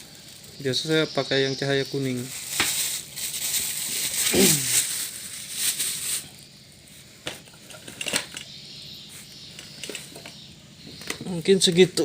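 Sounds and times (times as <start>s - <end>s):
crinkling rustling handling noise: 0.0s - 8.5s.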